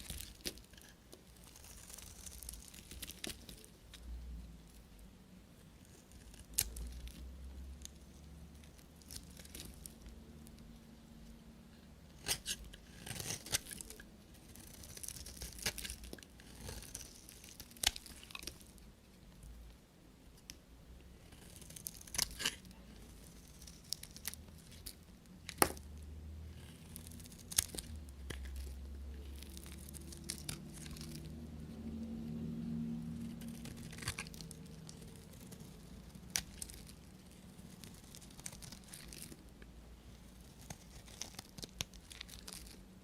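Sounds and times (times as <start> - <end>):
knife cutting through soap: 12.1 - 18.6.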